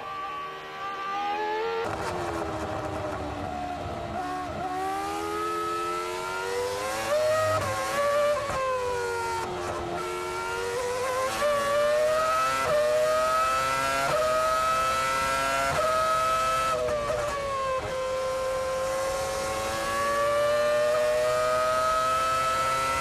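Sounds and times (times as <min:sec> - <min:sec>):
racing car engine at high revs: 0:00.0 - 0:23.0.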